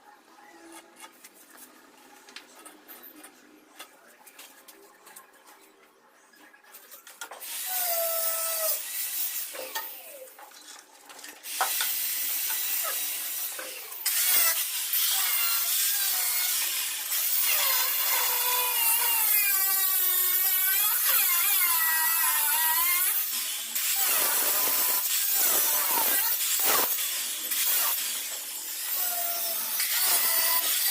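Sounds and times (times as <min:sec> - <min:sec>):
power tool cutting stone tile: 0:11.5 - 0:30.9.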